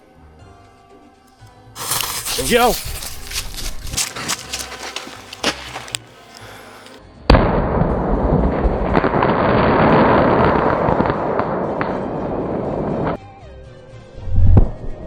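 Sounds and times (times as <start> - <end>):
firework shell blast: 1.8 - 7.0
dense rumbling with sharp cracks: 4.2 - 13.2.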